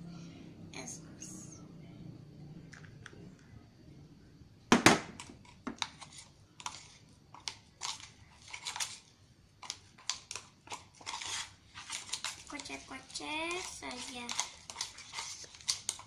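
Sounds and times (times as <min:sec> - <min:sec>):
utensil stirring sticky slime: 0:05.2 - 0:16.0.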